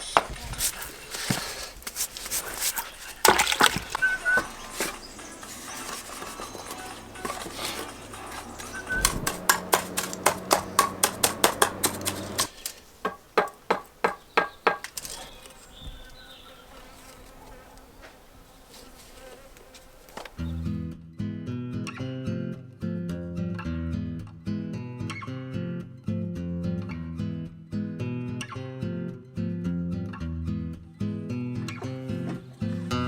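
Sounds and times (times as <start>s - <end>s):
sharp taps and knocks: 2.7s - 15.2s.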